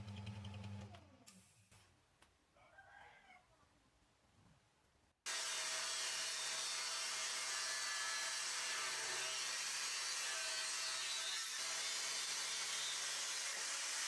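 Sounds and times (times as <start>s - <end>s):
power tool grinding metal: 5.3s - 14.0s.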